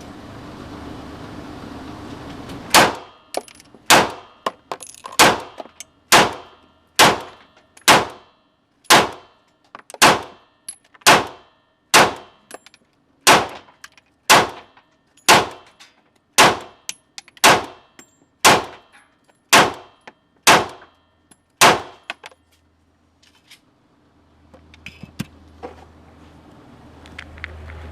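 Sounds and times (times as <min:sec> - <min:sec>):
pistol firing single shots: 0:02.8 - 0:03.1, 0:03.9 - 0:04.3, 0:05.2 - 0:08.2, 0:08.9 - 0:09.3, 0:10.0 - 0:10.4, 0:11.0 - 0:12.4, 0:13.3 - 0:13.6, 0:14.3 - 0:14.7, 0:15.3 - 0:15.6, 0:16.4 - 0:16.8, 0:17.4 - 0:17.8, 0:18.4 - 0:18.8, 0:19.5 - 0:20.8, 0:21.6 - 0:22.0.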